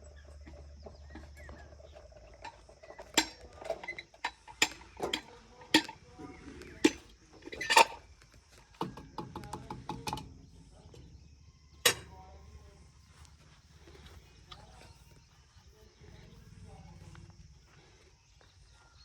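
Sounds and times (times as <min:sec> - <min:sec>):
sharp clinks and knocks: 0:00.4 - 0:06.2.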